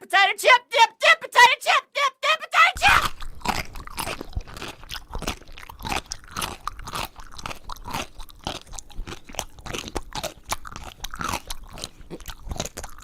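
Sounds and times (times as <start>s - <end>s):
potato chips crunched and chewed: 2.8s - 13.0s.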